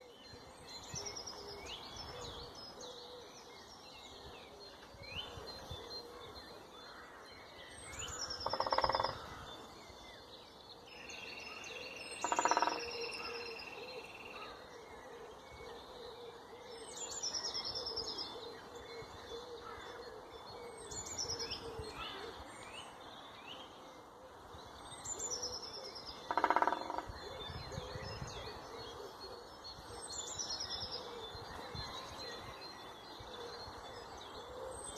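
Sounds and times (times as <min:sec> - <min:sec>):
background birdsong: 0:00.0 - 0:34.9
woodpecker drumming on wood: 0:08.4 - 0:09.2, 0:12.2 - 0:12.9, 0:26.2 - 0:27.1.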